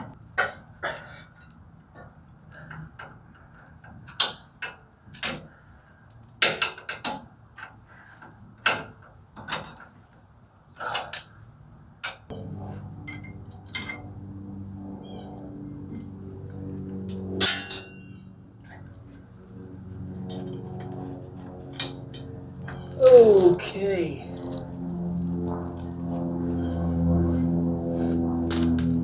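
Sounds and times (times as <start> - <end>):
steady low hum: 12.3 - 29.0.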